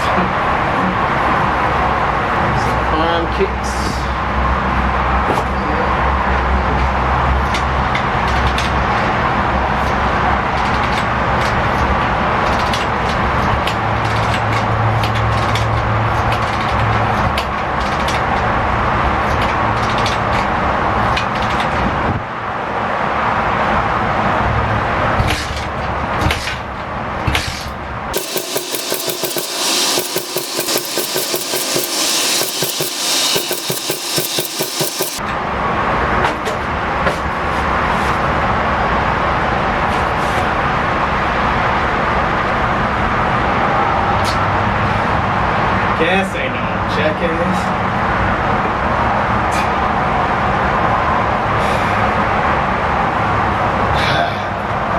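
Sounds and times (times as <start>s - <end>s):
small engine running: 28.2s - 35.2s.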